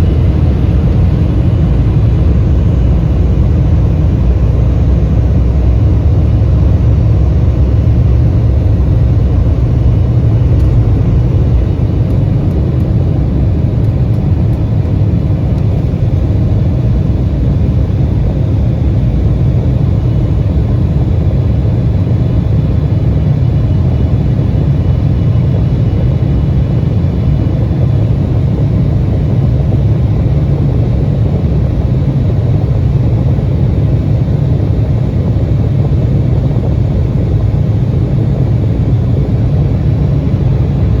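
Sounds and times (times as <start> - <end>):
jet airliner cabin drone: 0.0 - 41.0.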